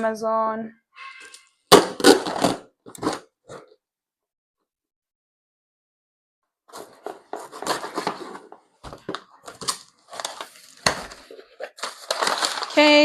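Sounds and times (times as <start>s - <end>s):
cardboard box crackling and rustling: 6.8s - 12.8s.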